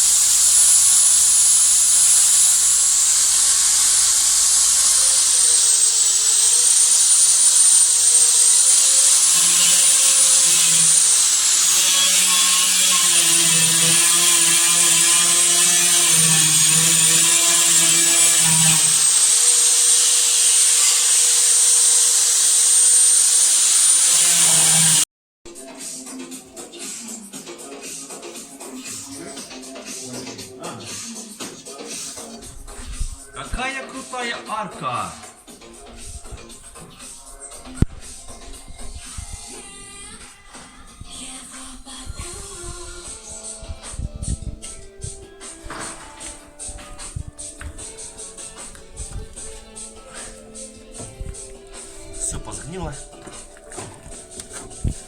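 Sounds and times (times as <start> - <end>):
power tool whining: 0.0 - 25.1
music: 0.0 - 55.0.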